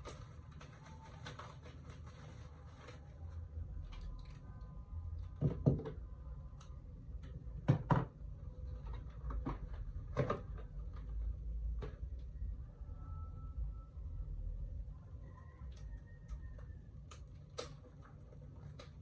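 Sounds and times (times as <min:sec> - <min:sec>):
low steady hum: 0:00.0 - 0:19.0
box handling clicks and knocks: 0:08.8 - 0:12.1.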